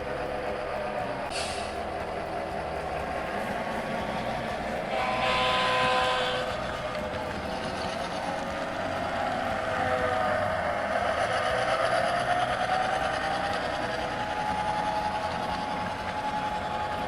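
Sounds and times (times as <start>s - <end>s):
model locomotive humming and whining: 0.0s - 17.0s.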